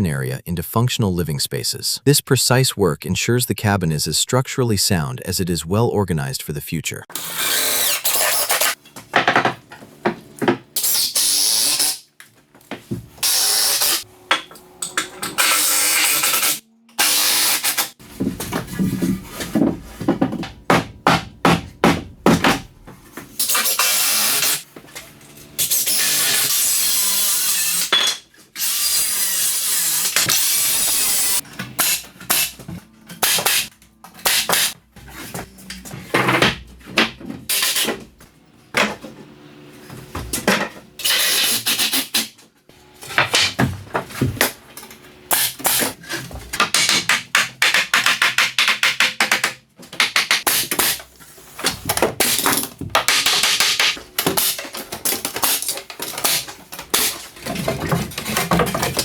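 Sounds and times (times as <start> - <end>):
power tool bursts: 10.8 - 12.1, 13.2 - 14.0, 15.4 - 18.0, 23.4 - 24.6.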